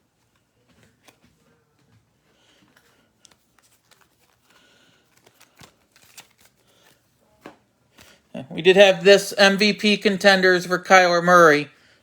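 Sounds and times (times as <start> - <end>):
cards sliding: 2.7 - 7.0.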